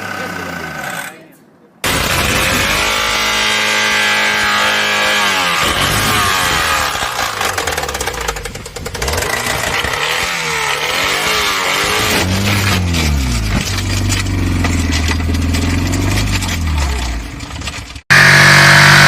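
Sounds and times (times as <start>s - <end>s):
harsh rattling clatter: 1.8s - 18.4s
car engine revving: 1.8s - 19.0s.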